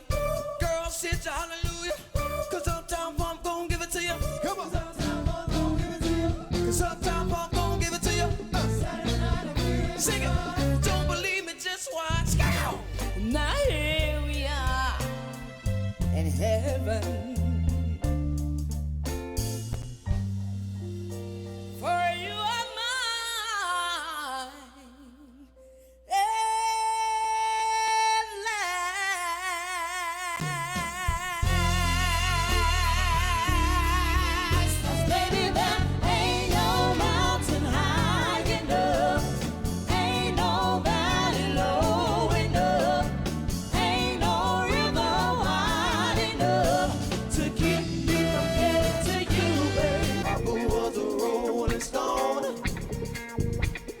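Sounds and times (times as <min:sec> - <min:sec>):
person singing soul: 0:00.0 - 0:17.9, 0:21.8 - 0:54.0
band with bass and drums: 0:00.0 - 0:22.6, 0:30.4 - 0:54.0.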